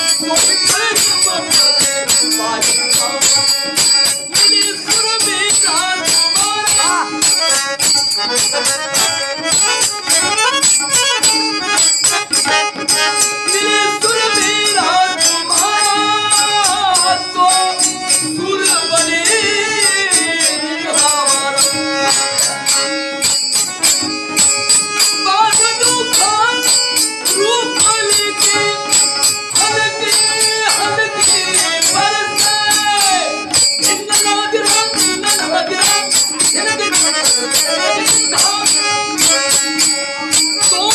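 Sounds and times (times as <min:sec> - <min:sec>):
man singing: 0:00.0 - 0:11.5, 0:12.3 - 0:23.2, 0:25.0 - 0:40.9
jingling percussion beat: 0:00.0 - 0:40.9.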